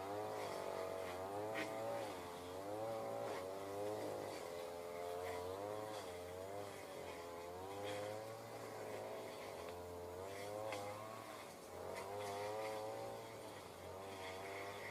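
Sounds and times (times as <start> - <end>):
small engine running: 0.0 - 14.9.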